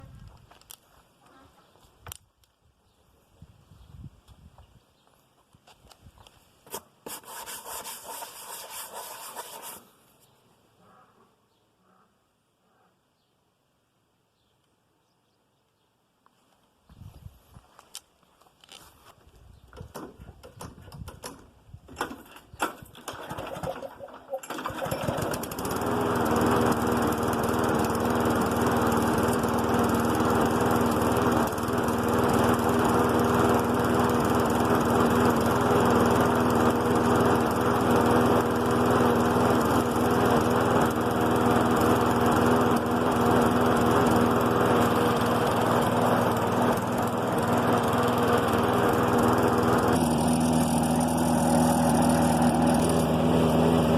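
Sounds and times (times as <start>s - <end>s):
lawn mower engine starting: 19.8s - 53.9s.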